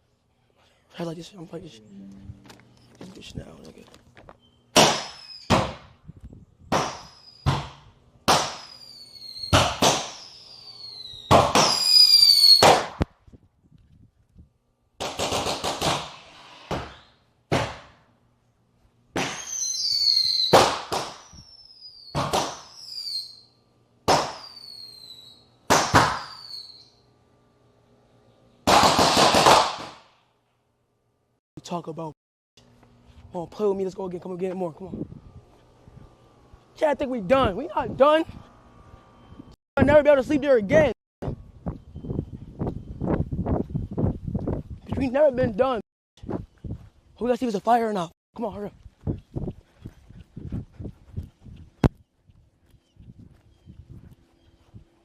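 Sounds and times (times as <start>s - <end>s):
firework shots: 4.8s - 5.9s, 6.7s - 13.1s, 15.0s - 18.1s, 19.2s - 23.2s, 24.1s - 25.0s, 25.7s - 26.7s, 28.7s - 30.2s
falling whistle: 5.1s - 5.5s, 8.6s - 9.6s, 10.2s - 12.7s, 19.4s - 20.6s, 21.2s - 23.6s, 24.4s - 25.5s, 26.2s - 27.0s.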